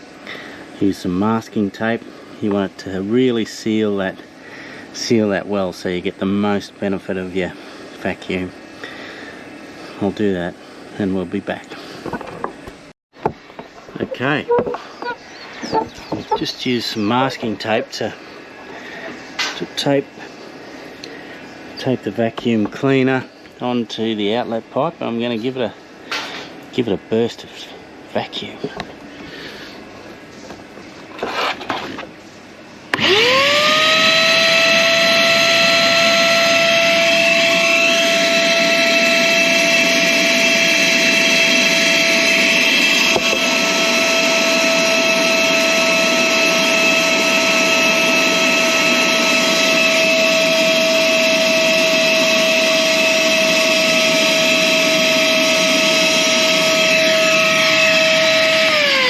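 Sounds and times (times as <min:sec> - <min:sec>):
shop vacuum motor whine: 0:32.9 - 0:59.0.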